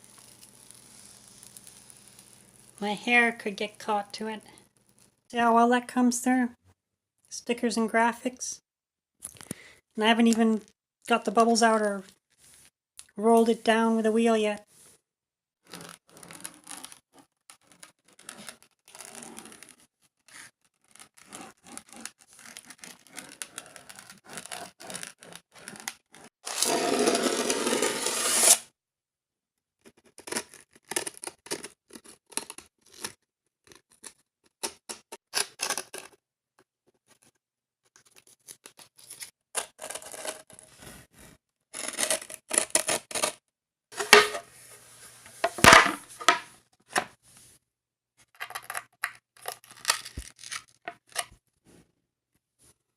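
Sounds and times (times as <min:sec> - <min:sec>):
grip tape scraping: 0:15.6 - 0:28.6, 0:29.9 - 0:36.2, 0:38.0 - 0:40.7, 0:41.7 - 0:43.4.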